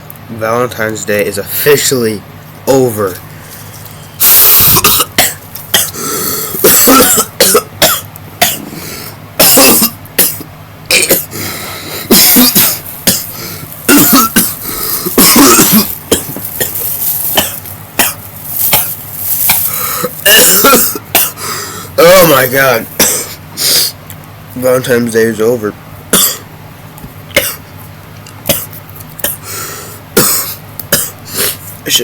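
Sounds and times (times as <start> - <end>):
person coughing: 4.2 - 22.2, 22.9 - 23.4, 26.1 - 26.5, 27.3 - 27.7, 28.5 - 31.7
throat-clearing: 4.2 - 22.2, 22.9 - 24.0, 26.1 - 26.5, 27.3 - 27.7, 28.4 - 31.6
strained breaths: 5.8 - 6.7, 8.6 - 9.2, 11.2 - 20.3, 21.3 - 22.0, 23.1 - 24.0, 29.4 - 30.6.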